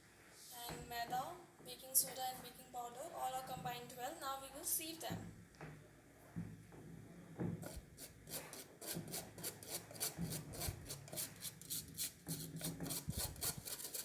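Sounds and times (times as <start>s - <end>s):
sieve shaking flour: 7.6s - 14.0s.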